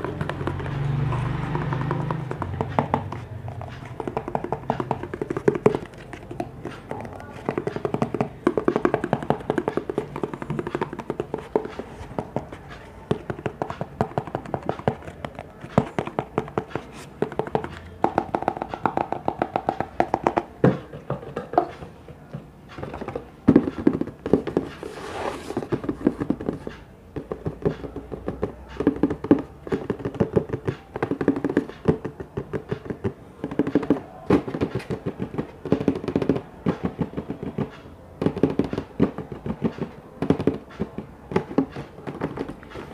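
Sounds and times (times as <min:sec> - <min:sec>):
fast tapping on hard objects: 0:00.0 - 0:42.9.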